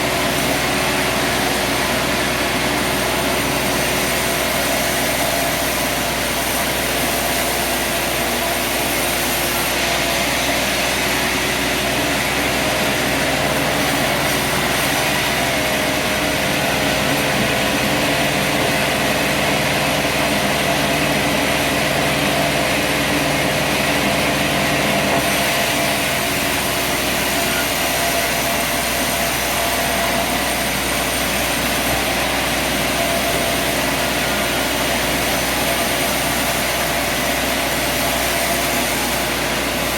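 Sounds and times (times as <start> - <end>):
sawmill machine noise: 0.0 - 39.9.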